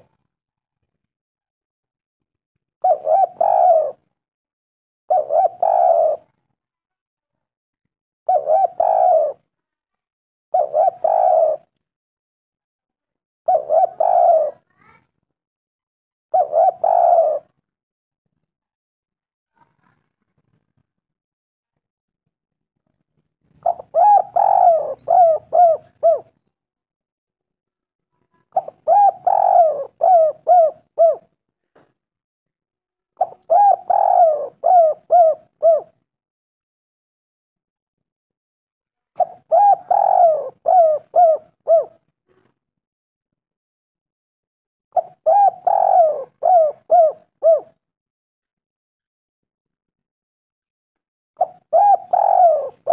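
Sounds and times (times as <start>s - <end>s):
dove cooing: 2.8s - 4.1s, 5.1s - 6.4s, 8.3s - 9.4s, 10.5s - 11.7s, 13.5s - 14.7s, 16.3s - 17.6s, 23.6s - 26.4s, 28.5s - 31.4s, 33.2s - 36.0s, 39.2s - 42.5s, 44.9s - 47.8s, 51.4s - 52.9s.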